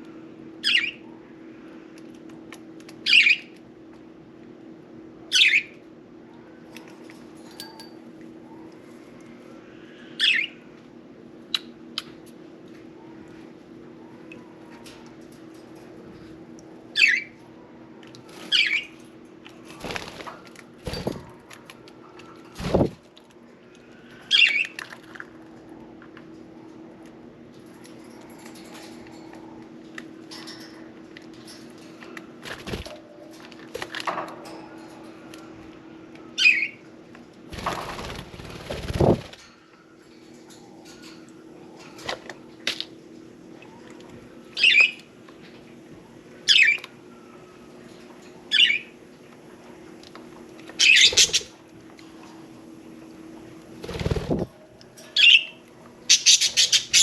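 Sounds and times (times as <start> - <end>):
faint steady hum: 0.0 - 57.0
wings fluttering: 19.5 - 23.1, 32.4 - 34.1, 37.5 - 39.6, 50.8 - 51.6, 53.6 - 54.6
wing-flapping: 37.5 - 39.4, 53.8 - 54.5
budgerigar chirp: 56.1 - 57.0.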